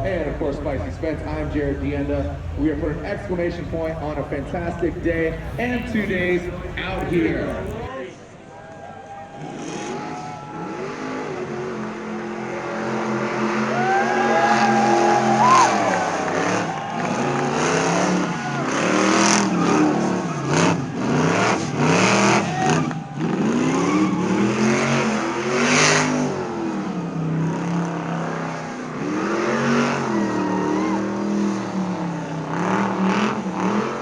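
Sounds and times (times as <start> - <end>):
car engine revving: 0.0 - 7.9, 10.6 - 34.0.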